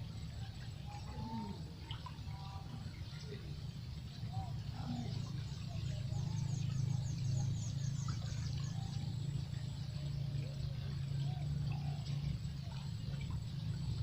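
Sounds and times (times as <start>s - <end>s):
steady low rumble: 0.0s - 14.0s
lower bird chirps: 4.0s - 14.0s.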